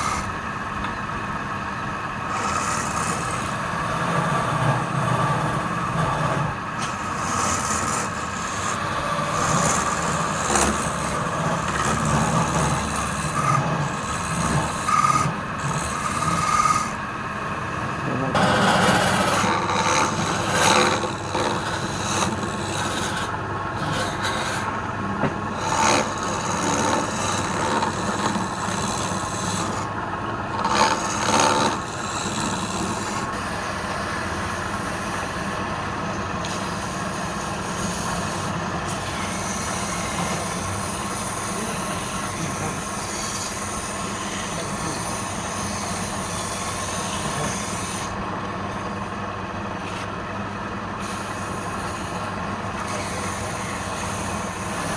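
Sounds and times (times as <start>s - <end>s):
tool cutting spinning wood: 0.0s - 54.9s
wood lathe running: 0.0s - 54.9s.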